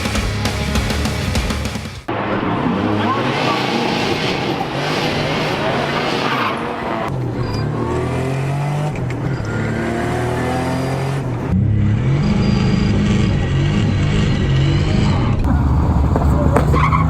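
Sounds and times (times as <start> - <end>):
rushing noise: 2.1 - 7.1
car engine accelerating hard: 2.1 - 17.0.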